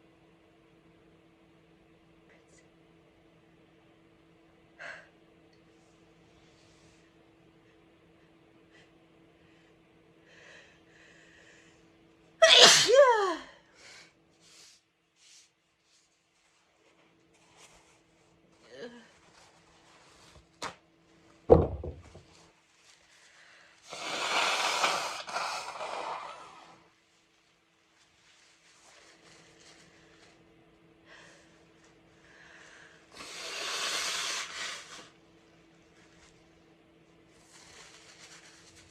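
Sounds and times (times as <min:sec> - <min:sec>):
woman sneezing: 0:12.4 - 0:13.5.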